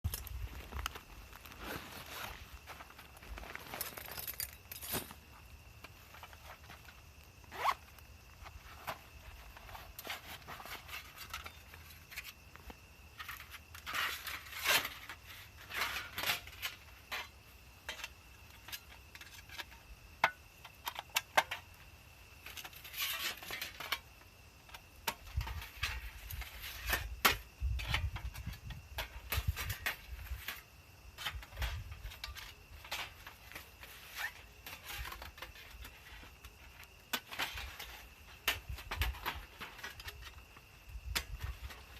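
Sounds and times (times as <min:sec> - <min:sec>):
metal panels clinking and scraping: 0:01.5 - 0:05.2, 0:08.5 - 0:12.3, 0:13.2 - 0:21.7, 0:22.4 - 0:24.1, 0:31.2 - 0:40.4.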